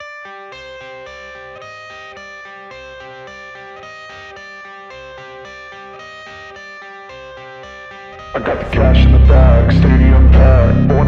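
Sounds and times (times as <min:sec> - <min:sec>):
guitar plucking repeating pattern: 0:00.2 - 0:11.0
steady bass line: 0:08.2 - 0:11.0.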